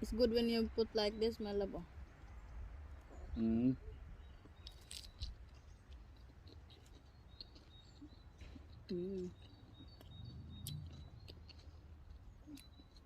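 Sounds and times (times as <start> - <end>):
high bird chirps: 7.1 - 13.0.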